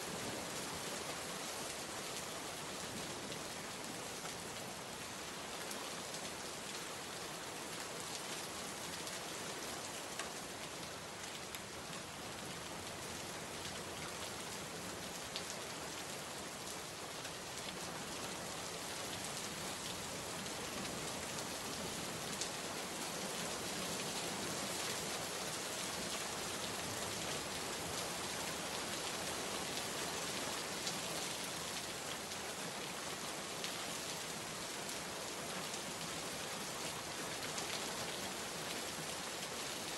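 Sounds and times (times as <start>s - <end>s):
steady rain hiss: 0.0s - 39.9s
faint raindrop ticks: 10.1s - 12.1s.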